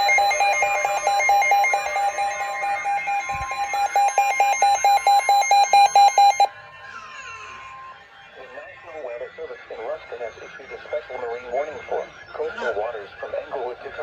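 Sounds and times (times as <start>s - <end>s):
faint steady warning tone: 0.0s - 6.5s
radio alarm beeping rapidly: 0.0s - 6.5s.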